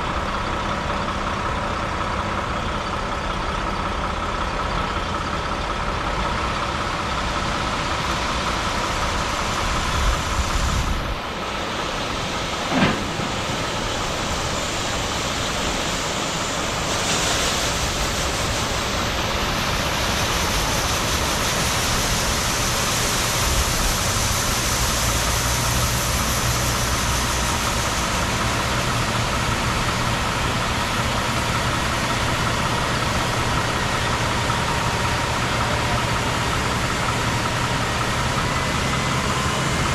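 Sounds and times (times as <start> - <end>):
harvest machinery running: 0.0 - 39.9
short sharp knock: 12.7 - 13.3.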